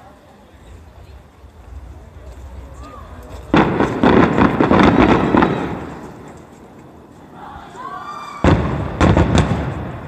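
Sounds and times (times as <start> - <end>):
fireworks crackling: 0.0 - 10.0
firework boom: 1.6 - 6.3, 8.4 - 10.0.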